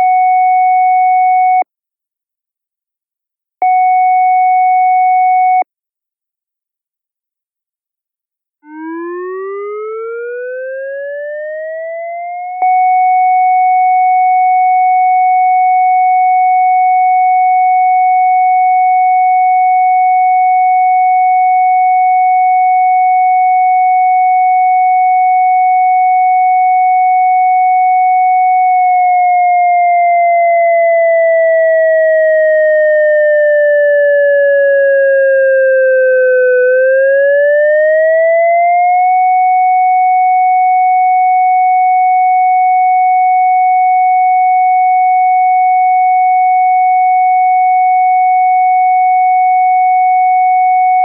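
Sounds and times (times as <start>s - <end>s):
electronic siren tone: 8.6s - 17.0s, 28.5s - 43.1s.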